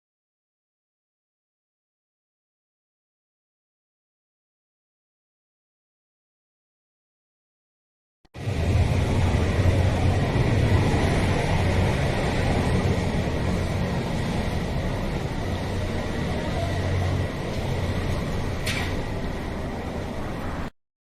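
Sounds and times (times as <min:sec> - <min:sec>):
faint high whine: 0:08.4 - 0:20.7
vehicle rumble: 0:08.4 - 0:20.7.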